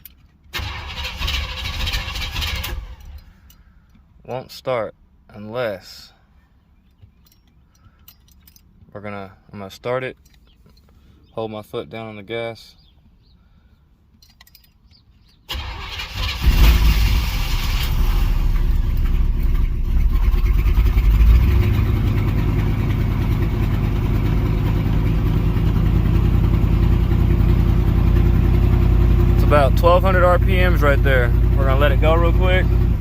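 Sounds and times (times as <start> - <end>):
car engine cranking and running: 0.0 - 4.1, 14.1 - 33.0.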